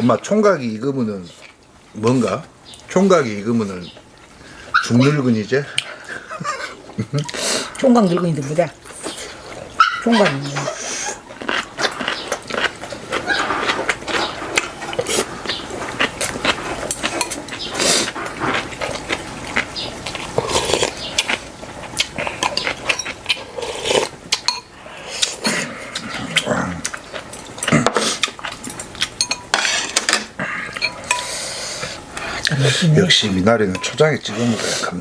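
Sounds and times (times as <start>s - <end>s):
chewing and slurping: 8.7s - 35.0s
utensils clicking against bowls: 27.3s - 31.4s.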